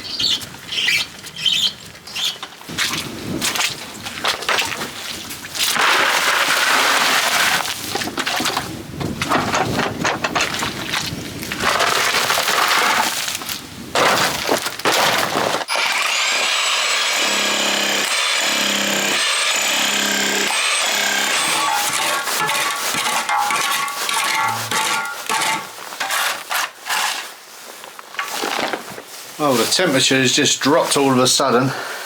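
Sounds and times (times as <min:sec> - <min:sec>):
floor breaking and scraping with tools: 0:05.6 - 0:17.4, 0:18.1 - 0:27.4, 0:28.1 - 0:29.0
held high tones: 0:15.7 - 0:18.1.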